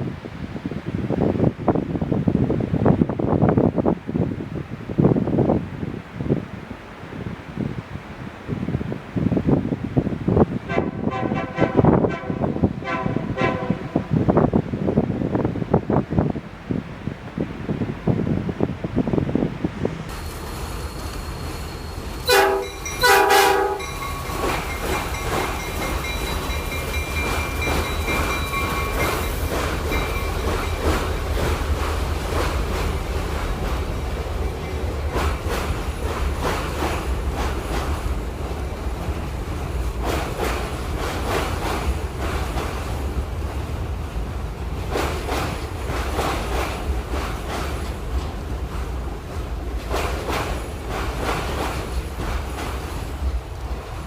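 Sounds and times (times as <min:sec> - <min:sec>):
train horn blasts: 0:10.7 - 0:14.2, 0:22.2 - 0:23.9
train wheels clacking: 0:20.1 - 0:54.0.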